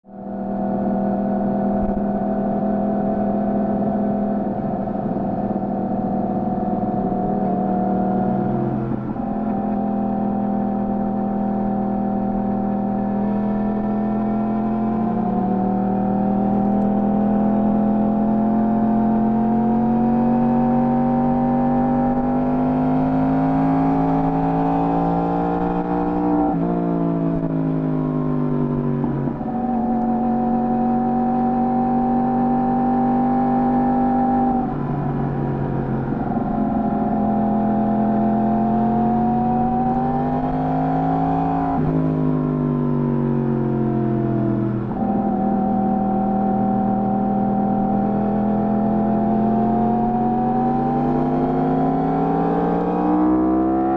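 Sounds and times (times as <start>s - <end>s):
motorcycle engine revving: 0.3s - 53.9s.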